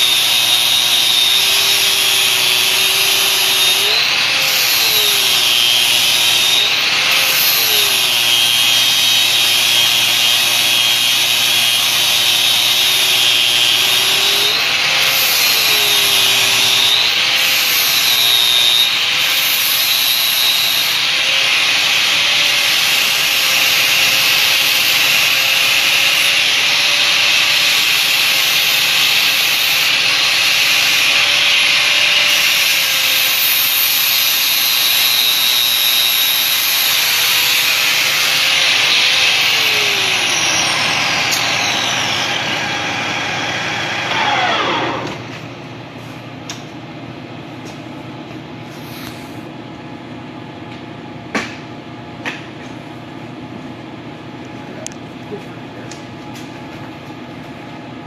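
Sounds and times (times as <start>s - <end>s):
power tool grinding: 0.0s - 45.4s.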